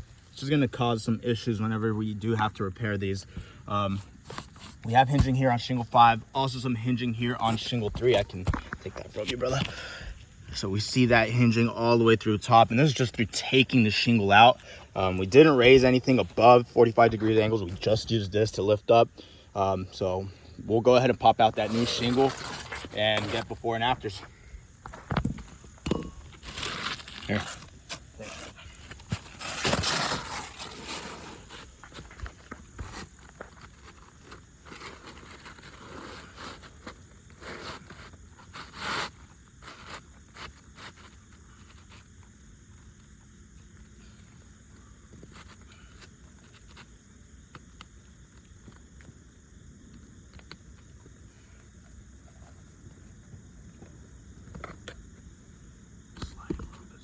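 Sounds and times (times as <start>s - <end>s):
tools scraping roof shingles: 3.3s - 10.6s, 20.8s - 42.1s.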